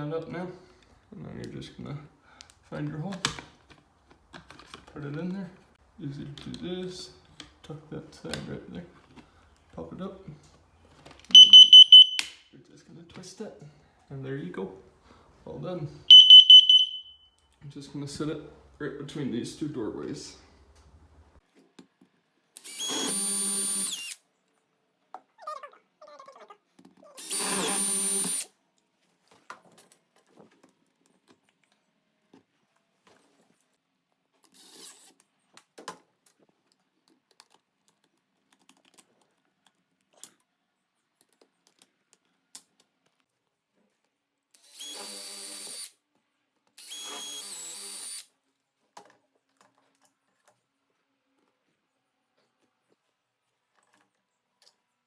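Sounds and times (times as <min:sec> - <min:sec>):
power drill bursts: 0:11.4 - 0:12.2, 0:16.1 - 0:17.0, 0:22.6 - 0:24.2, 0:27.2 - 0:28.5, 0:44.6 - 0:46.0, 0:46.8 - 0:48.3.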